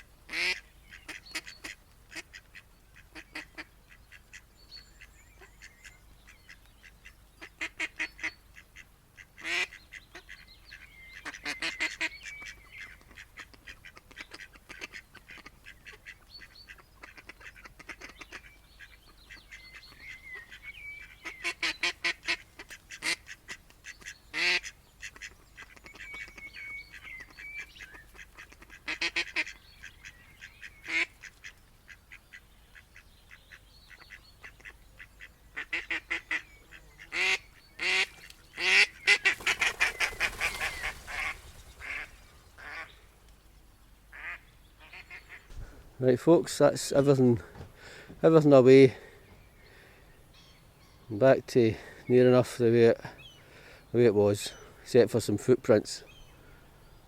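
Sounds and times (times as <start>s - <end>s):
waterfowl honking: 0.0s - 6.6s, 7.4s - 43.1s, 44.1s - 45.5s.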